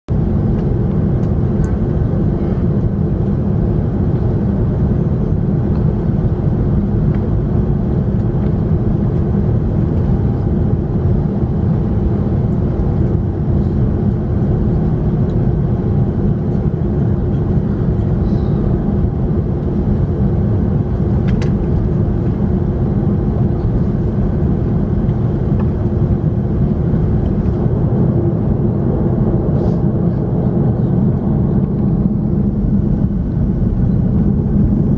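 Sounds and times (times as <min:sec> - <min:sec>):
jet engine drone in cabin: 0:00.1 - 0:34.9
airflow: 0:16.9 - 0:19.0, 0:28.5 - 0:34.9.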